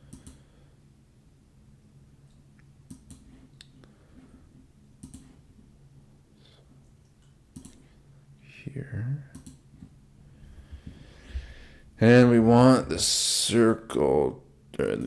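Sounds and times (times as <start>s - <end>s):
low steady hum: 0.0s - 15.0s
computer mouse clicks: 0.1s - 0.4s, 2.9s - 3.8s, 5.0s - 5.4s, 7.2s - 7.9s, 9.3s - 9.9s.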